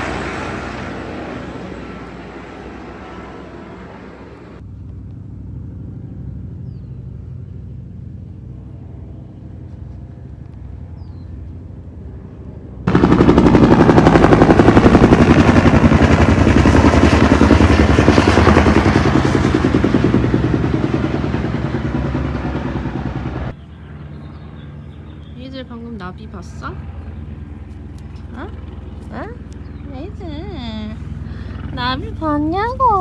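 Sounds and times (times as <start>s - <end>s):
engine hum: 0.0s - 33.0s.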